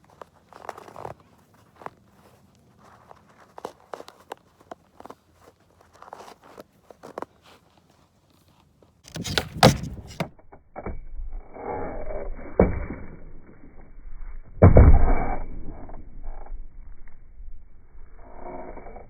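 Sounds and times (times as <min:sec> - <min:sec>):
skateboard scuffing: 0:00.0 - 0:10.4
skateboard popping and landing: 0:09.1 - 0:17.3.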